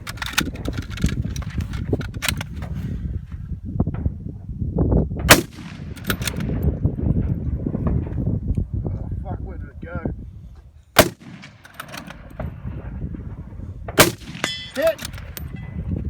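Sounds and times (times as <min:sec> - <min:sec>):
rifle shots hitting steel targets: 0:05.3 - 0:06.5, 0:11.0 - 0:12.3, 0:14.0 - 0:15.6.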